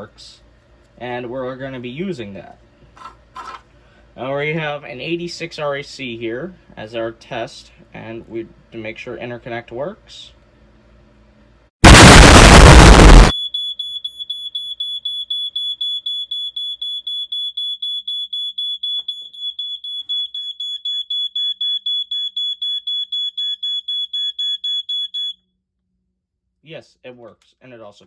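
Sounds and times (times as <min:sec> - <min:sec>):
loud burst of noise: 0:11.8 - 0:13.3
smoke alarm high-pitched beeping: 0:11.9 - 0:25.4.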